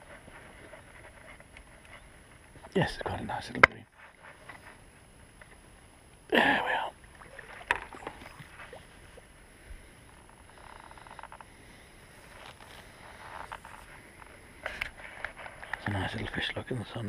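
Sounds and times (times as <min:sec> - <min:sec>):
faint outdoor background noise: 0:00.0 - 0:17.0
fish being handled clicks and rustles: 0:12.2 - 0:16.3.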